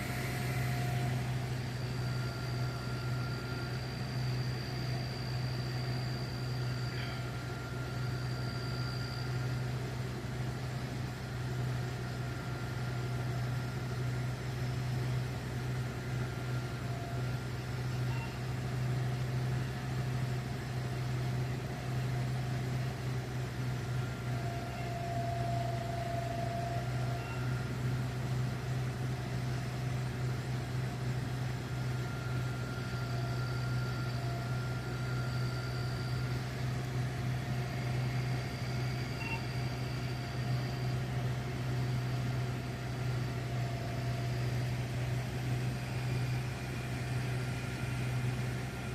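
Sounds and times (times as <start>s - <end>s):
vehicle engine idling: 0.0s - 4.3s.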